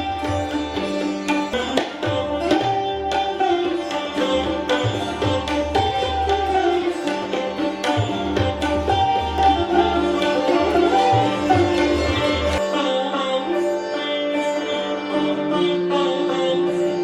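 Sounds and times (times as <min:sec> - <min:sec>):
plucked string melody: 0:00.0 - 0:17.0.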